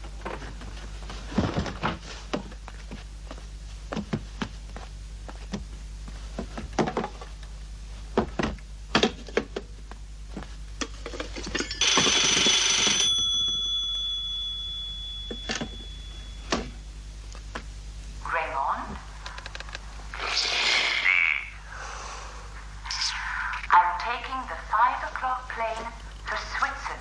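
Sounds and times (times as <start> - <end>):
telephone bell ringing: 11.7 - 16.8.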